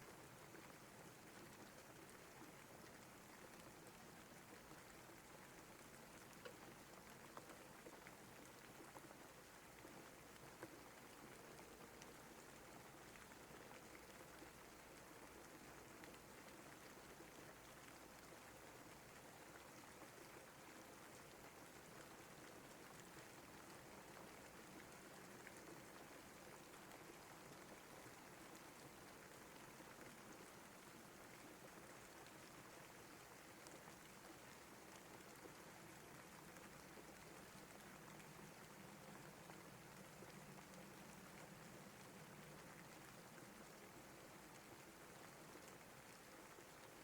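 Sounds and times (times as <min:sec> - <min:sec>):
faint steady rain: 0:00.0 - 0:47.0
raindrop ticks: 0:04.6 - 0:18.3.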